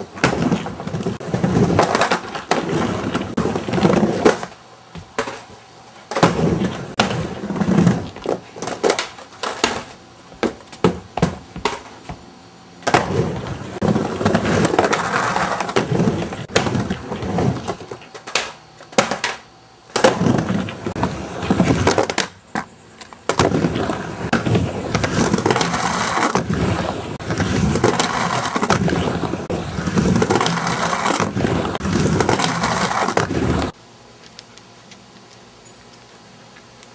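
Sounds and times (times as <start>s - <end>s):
skateboard trucks scraping coping: 0.0s - 12.2s, 12.8s - 33.8s
skateboard wheels rolling: 0.0s - 33.8s
skateboard clacks and knocks: 6.1s - 12.2s, 12.8s - 26.5s.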